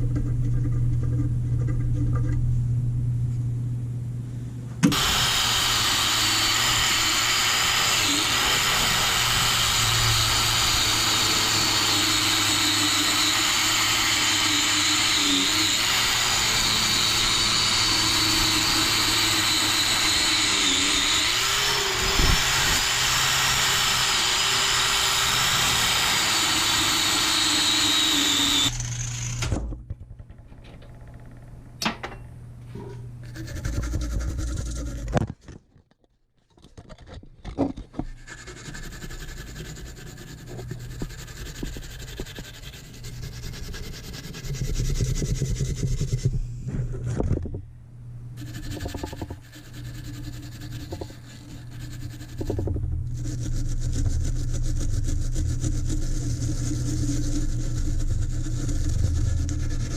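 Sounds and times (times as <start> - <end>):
power tool motor humming: 4.9 - 29.6
tool scraping against metal: 48.4 - 59.9.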